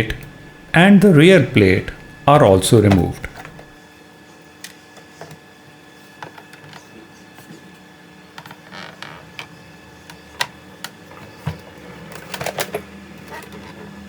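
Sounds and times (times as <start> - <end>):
faint steady hum: 0.0 - 3.8.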